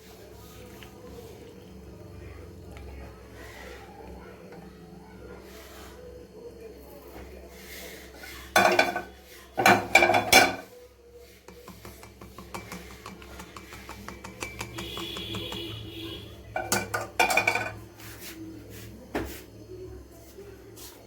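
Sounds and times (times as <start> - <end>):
metal pot and utensils clanking: 8.5 - 10.8, 11.5 - 15.8, 16.6 - 17.9.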